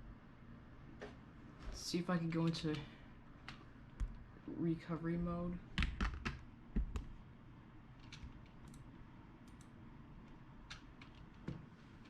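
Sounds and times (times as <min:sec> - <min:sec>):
computer keyboard and mouse clicks: 0:05.8 - 0:07.1, 0:08.0 - 0:11.6.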